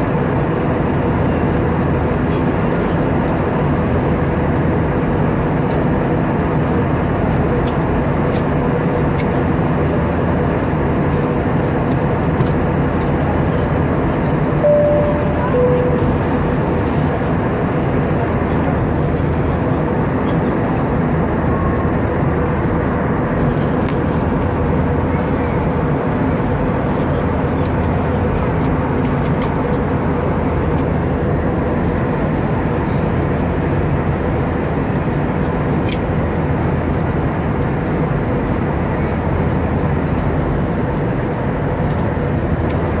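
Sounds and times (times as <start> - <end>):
aircraft cabin engine and airflow noise: 0.0 - 43.0
low drone: 14.6 - 16.9.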